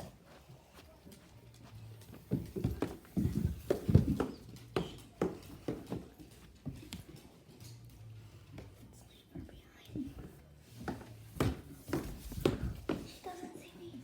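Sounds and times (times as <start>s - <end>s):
irregular thumps and knocks: 2.2s - 6.2s.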